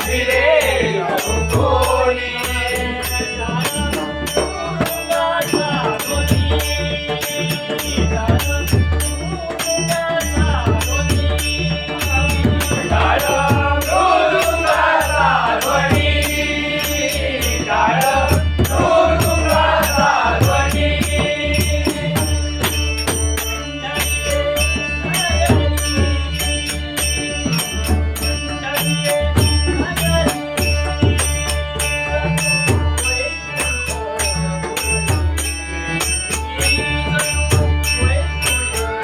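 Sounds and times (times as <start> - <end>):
hand drum beat: 9.8 - 23.5.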